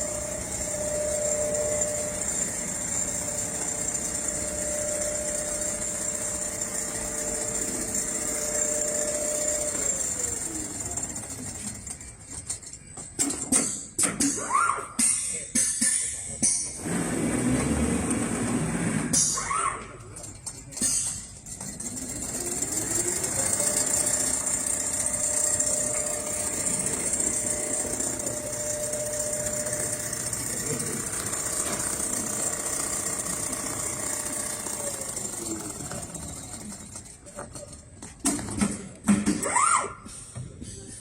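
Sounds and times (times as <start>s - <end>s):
sewing machine running: 0.0s - 12.6s, 21.4s - 37.4s.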